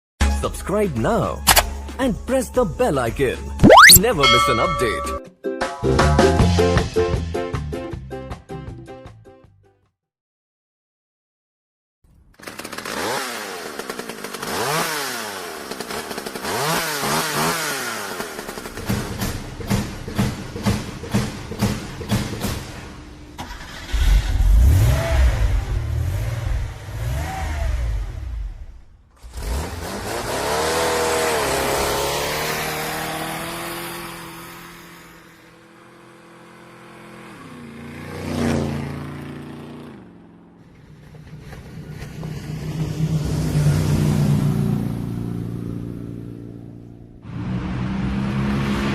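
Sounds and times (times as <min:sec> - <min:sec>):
small engine revving: 0:12.4 - 0:19.4, 0:29.2 - 0:35.4
vehicle engine revving: 0:23.5 - 0:28.6, 0:29.2 - 0:34.8
vehicle passing by: 0:40.7 - 0:46.5.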